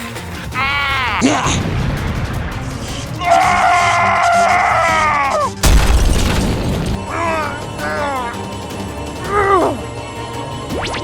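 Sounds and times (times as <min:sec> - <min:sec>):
background music: 0:00.0 - 0:11.0
short falling cries: 0:03.2 - 0:05.5
loud boom: 0:05.6 - 0:07.2.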